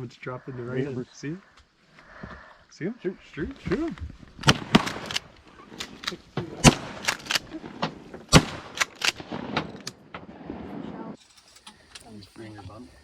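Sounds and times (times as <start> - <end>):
faint sharp gunshots: 4.4 - 11.2
loud shotgun blasts: 4.4 - 11.2.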